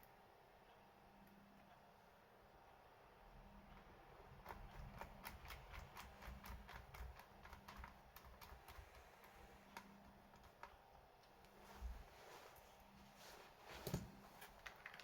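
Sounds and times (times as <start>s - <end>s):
typing on laptop keyboard: 3.8s - 11.0s.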